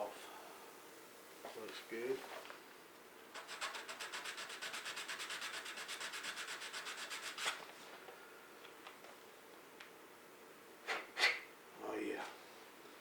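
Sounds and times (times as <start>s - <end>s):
sandpaper rubbing on wood: 3.4s - 7.6s.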